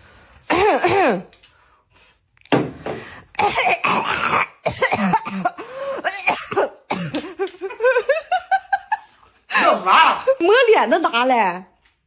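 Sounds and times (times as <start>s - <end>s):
person coughing: 3.4s - 7.4s
throat clearing: 6.3s - 7.3s.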